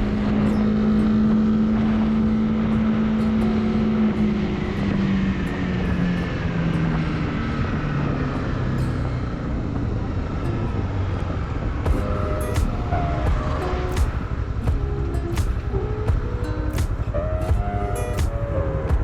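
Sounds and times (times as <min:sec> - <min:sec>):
motorcycle engine running: 0:00.0 - 0:05.7, 0:11.9 - 0:19.0
wind and road noise: 0:00.0 - 0:19.0.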